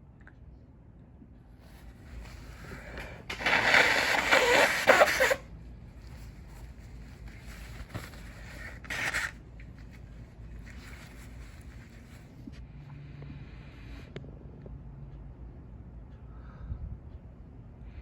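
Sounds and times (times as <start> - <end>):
person blowing nose: 2.3 - 5.5.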